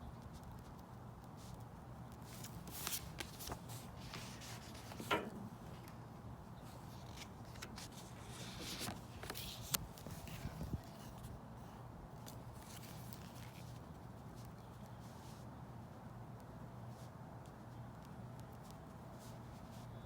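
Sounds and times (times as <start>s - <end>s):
low background hum: 0.0s - 20.0s
paper rustling: 2.2s - 6.0s, 6.6s - 11.4s, 12.2s - 13.8s.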